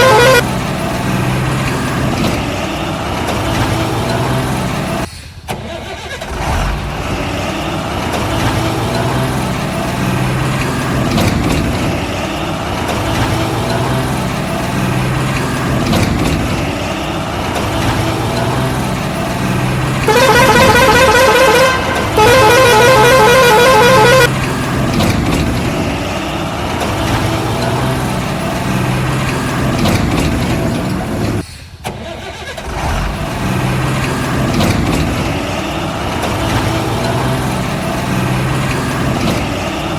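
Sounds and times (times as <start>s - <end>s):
warbling horn blasts: 0.0s - 0.6s, 20.0s - 24.4s
heavy truck engine running: 0.0s - 39.9s.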